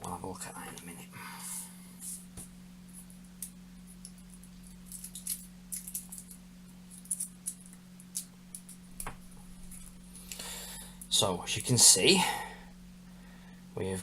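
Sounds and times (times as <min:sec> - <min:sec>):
steady low hum: 0:00.0 - 0:14.0
cable wires clicking and rustling: 0:02.9 - 0:10.4.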